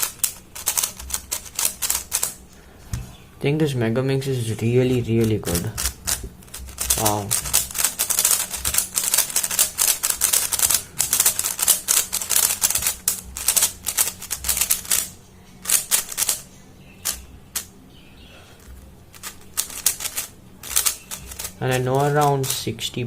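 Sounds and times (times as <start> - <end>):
puzzle cube clicking as turned: 0.0 - 2.4, 5.2 - 16.4, 19.1 - 22.6.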